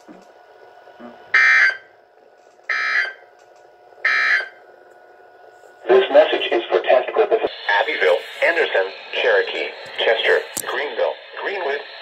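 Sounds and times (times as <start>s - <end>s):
harsh buzzing data bursts: 4.0s - 4.6s.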